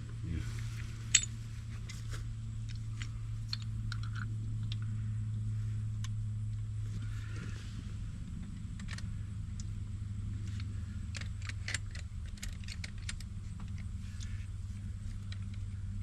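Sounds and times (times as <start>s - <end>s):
engine idling: 0.0s - 16.0s
light clicks and clinks: 1.1s - 2.0s.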